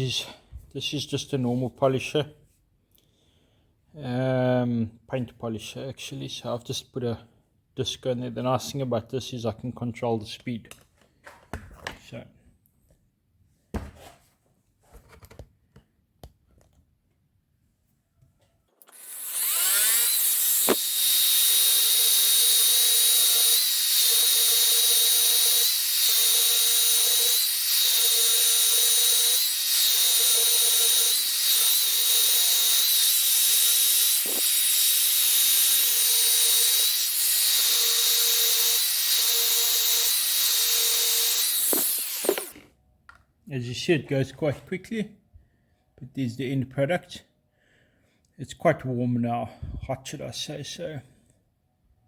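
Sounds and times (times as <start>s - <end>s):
polisher whining: 18.9s - 42.6s.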